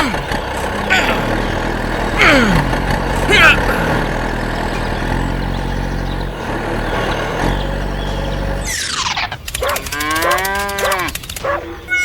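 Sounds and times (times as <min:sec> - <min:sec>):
small engine running: 0:00.0 - 0:11.6
cow mooing: 0:09.9 - 0:11.1.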